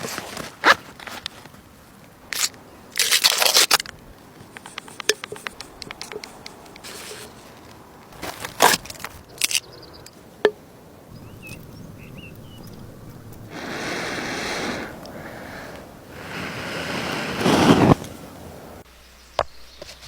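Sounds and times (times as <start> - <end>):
hand scraping: 13.3 - 18.6.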